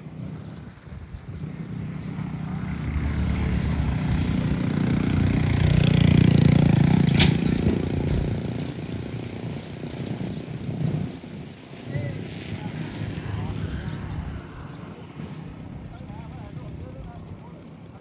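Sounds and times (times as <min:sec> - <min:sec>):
small engine running: 0:00.0 - 0:18.0
sharp click: 0:07.1 - 0:07.6.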